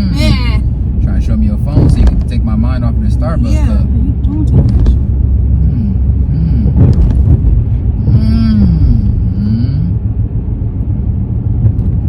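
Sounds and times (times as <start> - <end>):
person's wordless vocal sound: 0.0 - 0.6, 5.5 - 7.0, 8.0 - 10.0
car cabin road rumble: 0.0 - 12.0.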